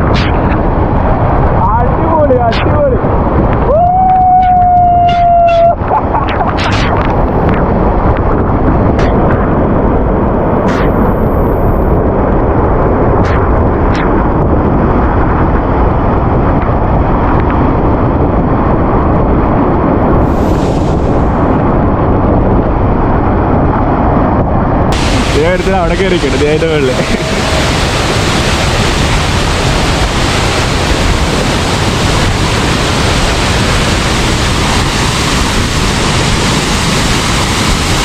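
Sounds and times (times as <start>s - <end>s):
waterfall rushing: 25.0s - 38.0s.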